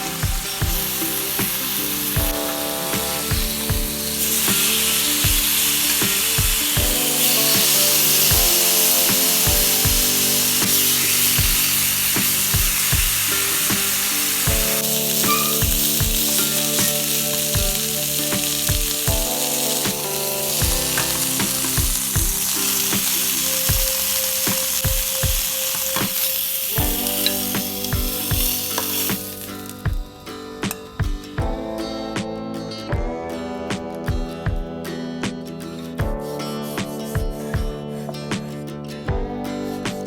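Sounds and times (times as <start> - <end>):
beef sizzling in a hot pan: 0.0 - 29.7
background music with steady beat: 0.0 - 40.0.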